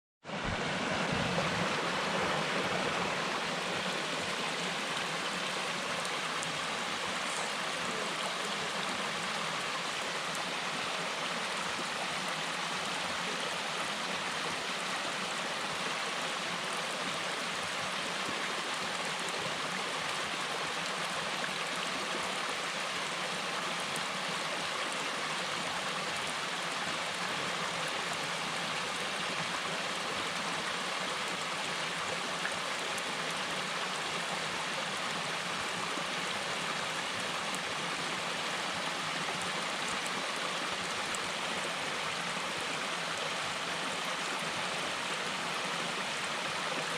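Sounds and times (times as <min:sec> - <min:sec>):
small waterfall splashing: 0:00.2 - 0:46.9.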